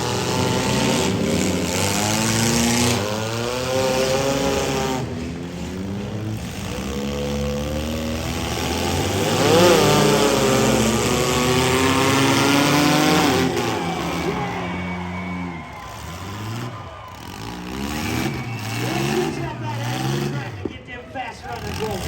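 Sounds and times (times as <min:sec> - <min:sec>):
car engines revving: 0:00.0 - 0:22.0.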